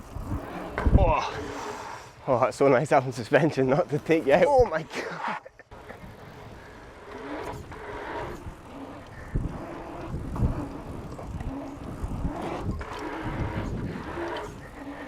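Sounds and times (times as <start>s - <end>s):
wind on microphone: 0.0s - 1.9s, 7.4s - 15.0s
bike tyres rolling: 0.0s - 15.0s.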